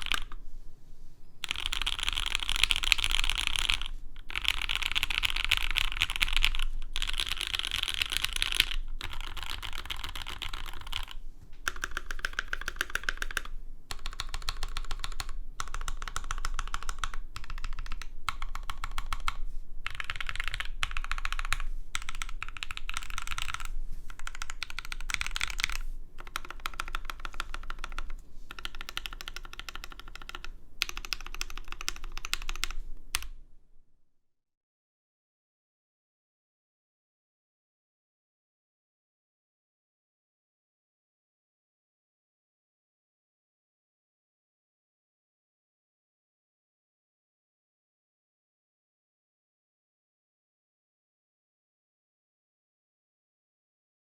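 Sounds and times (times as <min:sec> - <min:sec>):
fast typing on mechanical keyboard: 0:00.0 - 0:00.4, 0:01.4 - 0:33.3.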